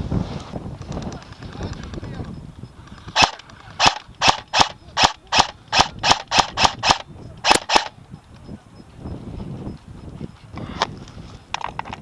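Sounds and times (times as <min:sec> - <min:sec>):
airsoft guns firing shots: 0:03.1 - 0:08.0.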